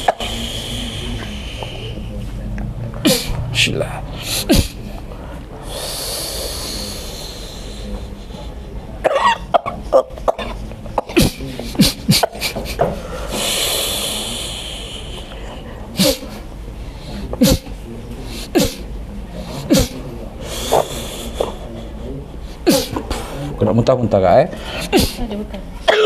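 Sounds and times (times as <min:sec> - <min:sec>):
long breathy hisses: 0:00.0 - 0:02.0, 0:05.6 - 0:07.9, 0:13.0 - 0:15.3
woman coughing and gagging: 0:09.0 - 0:12.6, 0:24.9 - 0:26.0.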